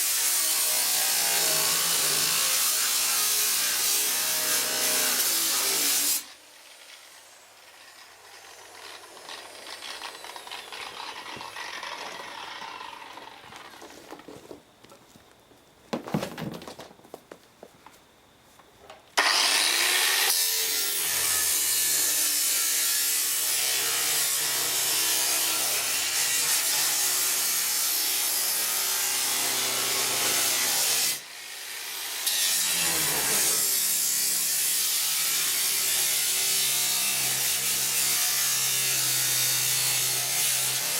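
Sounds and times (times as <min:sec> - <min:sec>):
angle grinder cutting sheet metal: 0:00.0 - 0:13.8, 0:19.2 - 0:40.9
handling sounds: 0:13.5 - 0:19.2.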